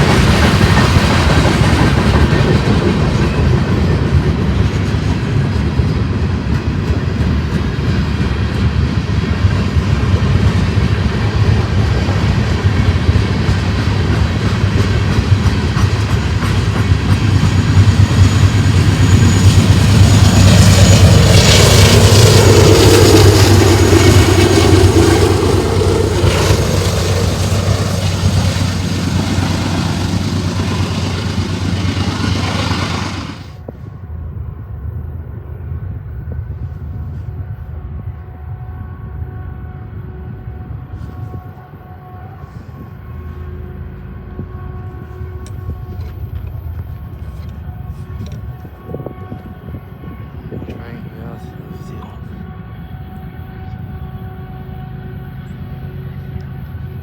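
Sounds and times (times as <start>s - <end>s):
train wheels clattering on rails: 0.0s - 33.7s.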